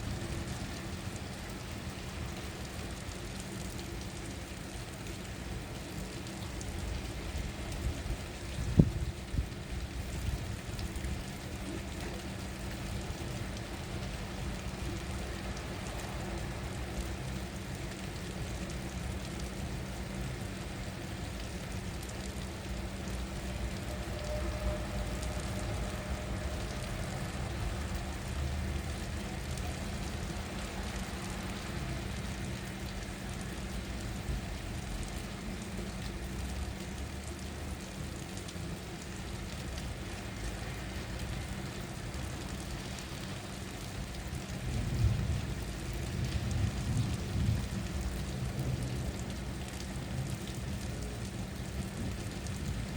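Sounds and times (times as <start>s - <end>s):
rain falling: 0.0s - 52.9s.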